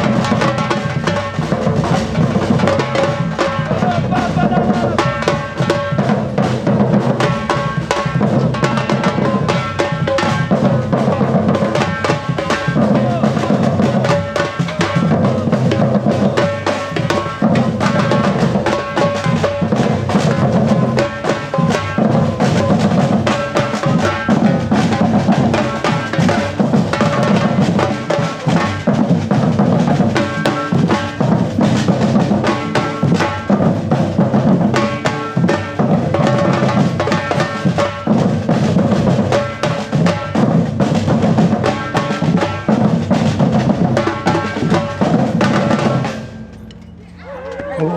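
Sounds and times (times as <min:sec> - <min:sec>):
deep bass drums: 0:00.0 - 0:27.9
percussion ensemble drumming: 0:00.0 - 0:47.9.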